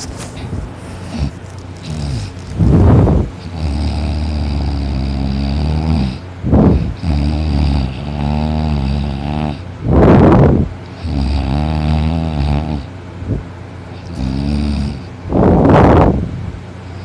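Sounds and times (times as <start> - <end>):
man snoring loudly: 1.1 - 10.4, 11.0 - 12.9, 14.0 - 15.1.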